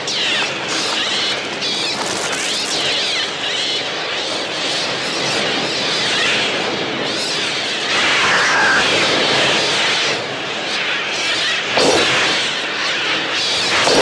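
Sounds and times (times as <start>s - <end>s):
whirring roar of a flock: 0.0s - 14.0s
electronic seagull shrieks: 7.9s - 9.1s.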